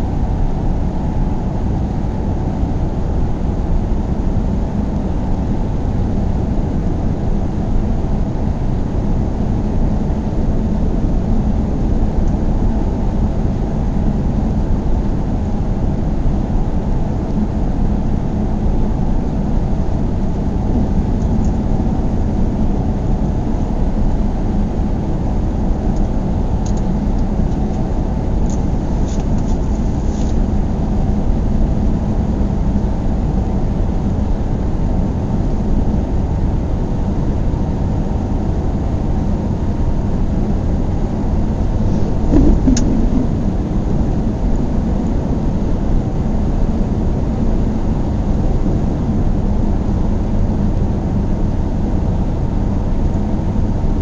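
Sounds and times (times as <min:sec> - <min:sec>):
faint constant hum: 0:00.0 - 0:54.0
car engine and tyre noise: 0:17.3 - 0:32.8.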